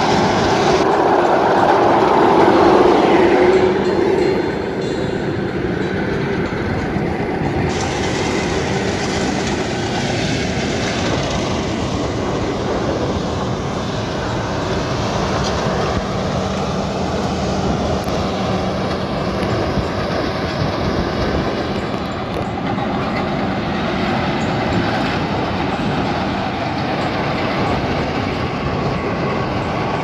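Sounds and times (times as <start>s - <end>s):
combine harvester running: 0.0s - 30.0s.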